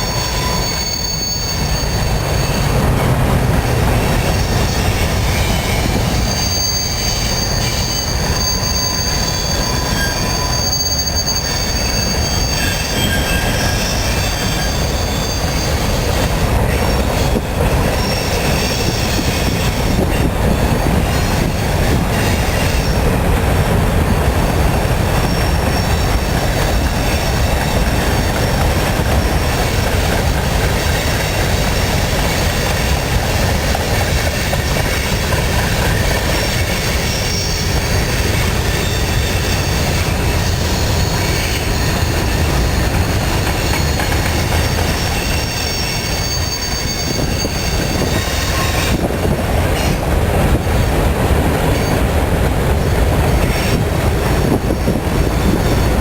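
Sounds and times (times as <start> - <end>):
high-pitched wheel squeal: 0.0 - 2.8, 4.3 - 16.0, 36.0 - 49.0
train wheels rumbling on rail: 0.0 - 56.0.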